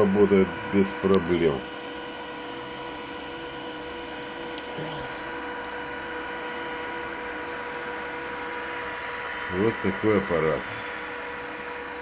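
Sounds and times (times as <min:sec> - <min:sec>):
welding inverter whining: 0:00.0 - 0:12.0.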